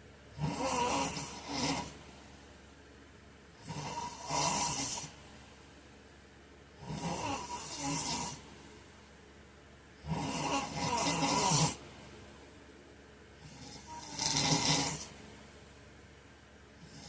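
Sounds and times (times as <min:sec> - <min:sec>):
man snoring: 0:00.3 - 0:02.0, 0:03.6 - 0:05.2, 0:06.8 - 0:08.5, 0:10.0 - 0:11.8, 0:13.4 - 0:15.2, 0:16.8 - 0:17.0.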